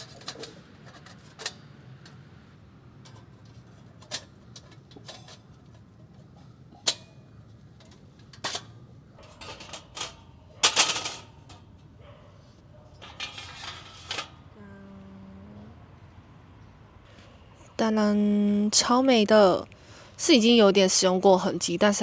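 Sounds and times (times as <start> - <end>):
metal clicks and clanks: 0.0 - 2.2, 3.0 - 11.9
metal clattering rattle: 7.8 - 11.9, 12.9 - 14.4.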